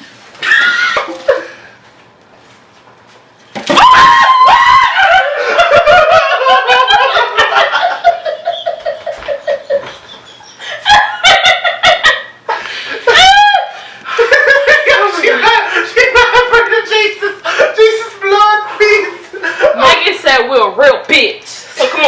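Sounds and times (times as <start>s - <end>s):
person laughing: 0.4s - 1.7s, 5.0s - 16.8s.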